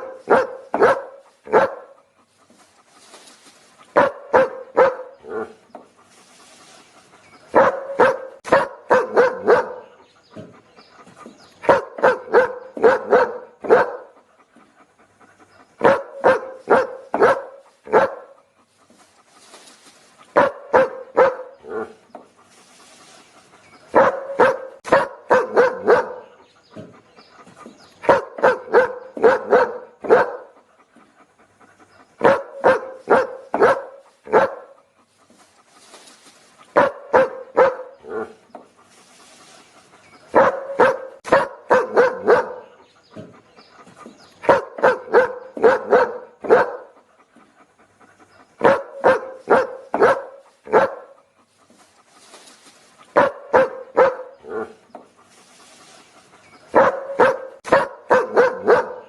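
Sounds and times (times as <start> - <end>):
dog barking: 0.0 - 2.0, 3.9 - 5.6, 7.5 - 10.0, 11.6 - 14.2, 15.8 - 18.4, 20.4 - 22.0, 23.9 - 26.9, 28.0 - 30.6, 32.2 - 34.8, 36.7 - 38.4, 40.3 - 43.3, 44.4 - 47.0, 48.6 - 51.2, 53.1 - 54.8, 56.7 - 59.0.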